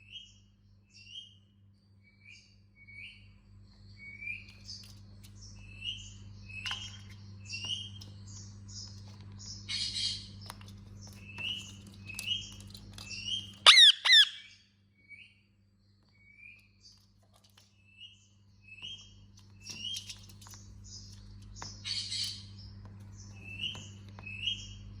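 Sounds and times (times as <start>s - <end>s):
parakeet chirping and squawking: 13.3s - 14.6s.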